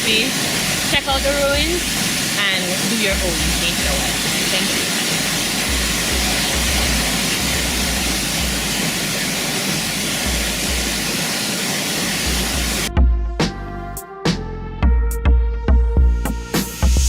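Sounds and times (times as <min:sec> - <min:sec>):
electronic music with a beat: 0:00.0 - 0:02.0, 0:02.9 - 0:11.3, 0:12.1 - 0:17.0
waterfall roaring: 0:00.0 - 0:12.9
low rumble: 0:03.1 - 0:11.0.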